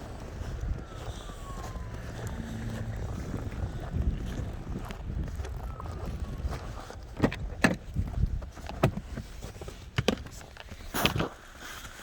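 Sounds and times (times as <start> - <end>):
footsteps in snow: 0.0 - 7.2
steady low rumble: 0.0 - 8.6.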